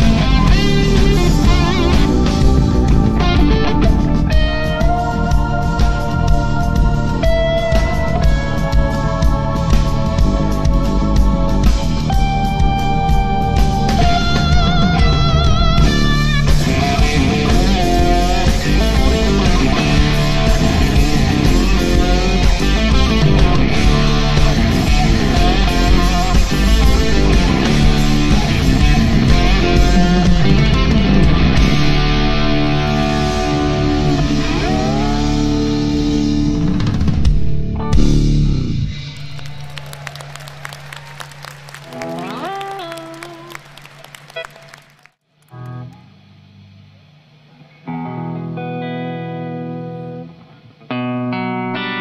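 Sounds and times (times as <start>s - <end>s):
rock band backing: 0.0s - 44.9s, 47.7s - 52.0s
electric guitar lead: 0.0s - 46.7s, 47.5s - 52.0s
electric guitar note gliding upward: 12.1s - 36.8s
scattered clapping: 39.0s - 45.8s.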